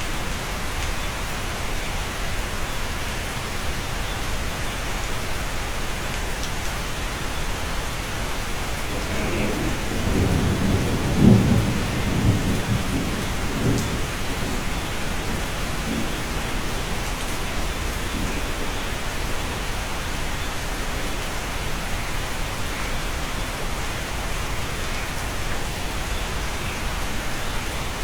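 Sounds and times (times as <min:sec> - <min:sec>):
steady rain: 0:00.0 - 0:28.0
thunder rumbling: 0:08.5 - 0:20.2.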